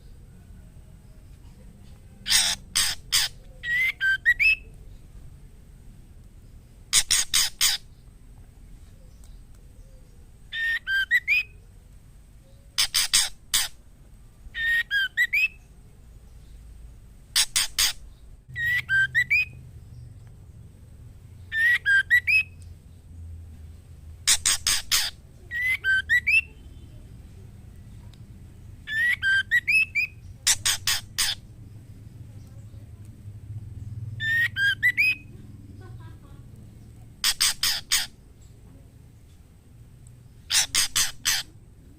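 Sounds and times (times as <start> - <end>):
bird harsh rasping calls: 2.2 - 4.7, 6.9 - 8.0, 10.5 - 11.6, 12.7 - 13.8, 14.5 - 15.7, 17.3 - 19.6, 21.4 - 22.6, 24.2 - 27.0, 28.9 - 31.7, 34.2 - 35.9, 37.1 - 38.3, 40.2 - 41.7
bird whistled phrases: 2.3 - 4.7, 10.5 - 11.6, 14.6 - 15.7, 17.4 - 19.6, 21.5 - 22.6, 24.3 - 27.0, 28.9 - 31.4, 34.2 - 35.3.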